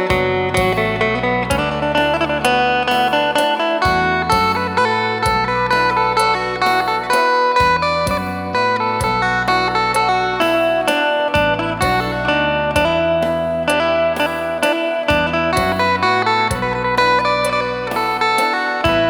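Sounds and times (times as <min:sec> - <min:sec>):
low held bass notes: 0:00.0 - 0:19.0
plucked lute notes: 0:00.0 - 0:19.0.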